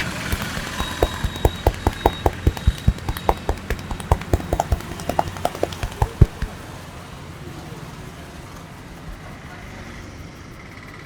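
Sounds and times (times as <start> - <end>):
hands tapping and slapping a head: 0.0 - 6.6.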